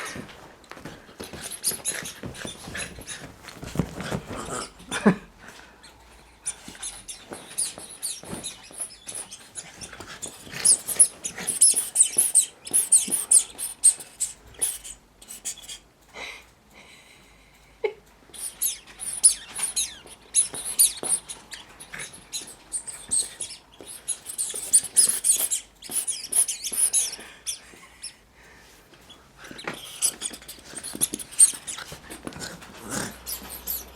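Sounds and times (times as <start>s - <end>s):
squeaky toy squeaks: 1.2s - 3.3s, 6.4s - 15.8s, 18.3s - 28.1s, 29.5s - 33.9s.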